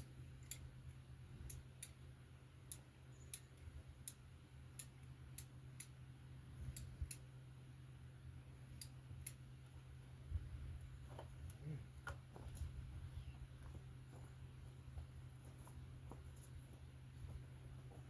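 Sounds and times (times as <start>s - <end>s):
sharp irregular clicks: 0.0s - 6.0s, 6.6s - 7.3s, 8.7s - 9.4s
faint low hum: 0.0s - 18.0s.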